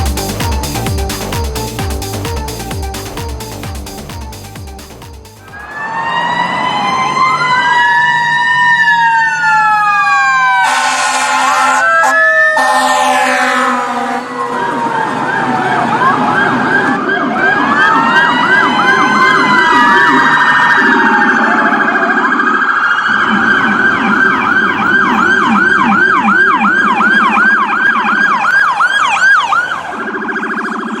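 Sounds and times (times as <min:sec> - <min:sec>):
electronic emergency siren: 0:00.0 - 0:31.0
lower pulsing tone: 0:23.1 - 0:27.4.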